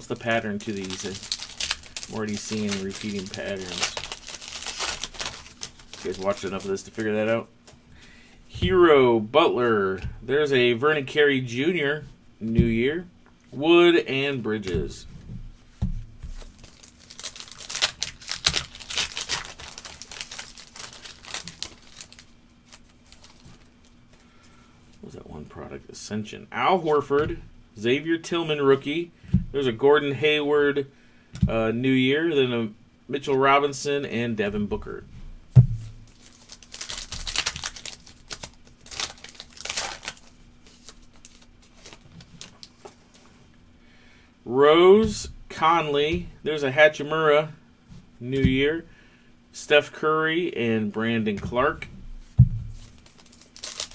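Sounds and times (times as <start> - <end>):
card pack wrapper crinkling and tearing: 0.0 - 7.3, 16.4 - 24.0, 36.1 - 43.2, 52.8 - 53.9
cards being handled: 0.0 - 7.8, 15.7 - 24.3, 36.0 - 43.4
faint steady hum: 0.0 - 53.9
thump: 35.6 - 36.0, 52.4 - 52.8.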